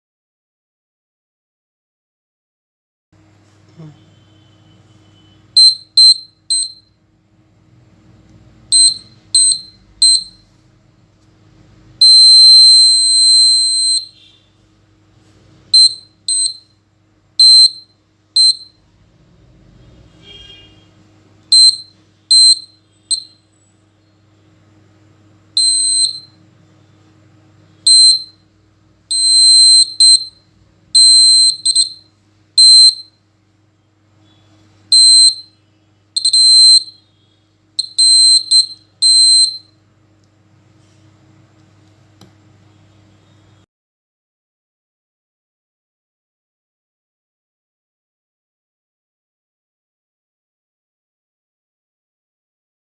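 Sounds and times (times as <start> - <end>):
high-pitched alarm buzzer beeps: 4.0 - 7.0, 8.7 - 10.6, 12.0 - 14.6, 15.7 - 16.8, 17.4 - 18.8, 20.1 - 20.9, 21.5 - 23.8, 25.5 - 26.4, 27.8 - 28.4, 29.1 - 33.2, 34.2 - 39.8.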